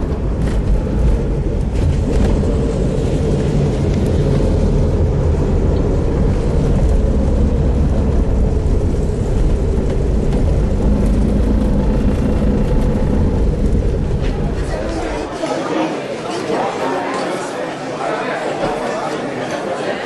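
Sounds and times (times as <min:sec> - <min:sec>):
road and wind rumble: 0:00.0 - 0:15.3
car engine drone: 0:00.0 - 0:15.4.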